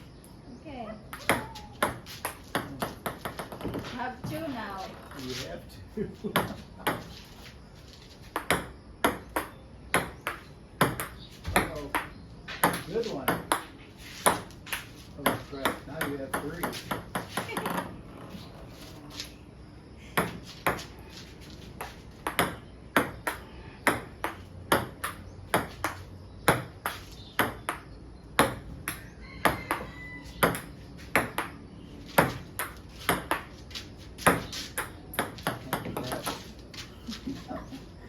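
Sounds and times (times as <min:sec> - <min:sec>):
ping pong ball hitting paddles: 0:01.1 - 0:04.4, 0:06.3 - 0:07.1, 0:08.4 - 0:13.7, 0:14.3 - 0:17.9, 0:21.8 - 0:33.6, 0:34.2 - 0:36.4.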